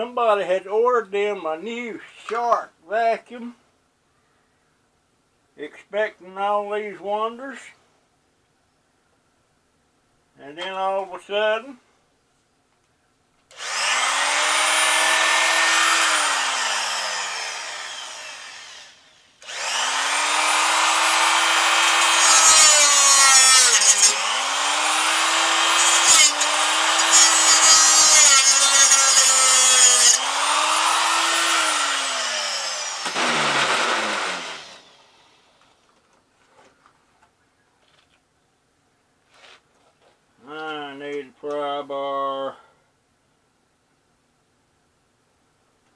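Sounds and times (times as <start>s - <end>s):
cut-off tool whining: 13.5s - 35.4s.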